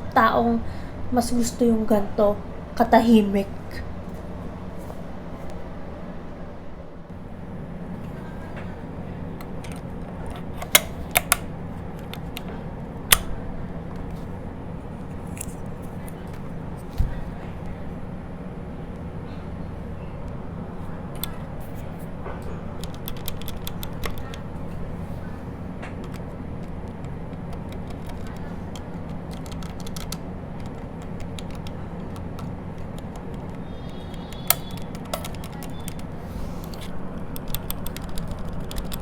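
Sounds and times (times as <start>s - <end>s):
steady low hum: 0.0s - 39.0s
soft keyboard keystrokes: 9.4s - 12.5s, 22.5s - 24.5s, 25.8s - 39.0s.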